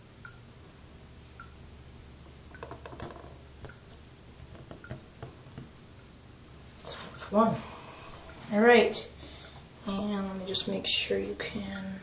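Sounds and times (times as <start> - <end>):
low steady hum: 0.0 - 12.0
small objects clicking and tapping: 2.5 - 3.8.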